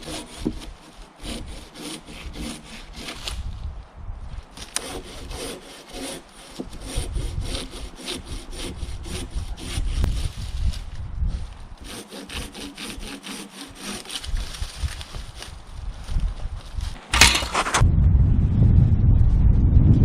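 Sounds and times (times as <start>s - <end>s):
hand saw cutting through log: 0.0s - 3.4s, 4.6s - 10.8s, 11.8s - 15.6s.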